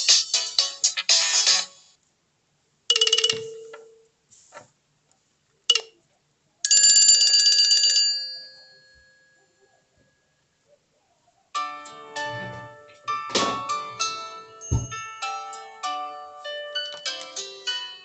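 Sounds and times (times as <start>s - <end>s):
bright ringing tone: 2.9s - 4.1s.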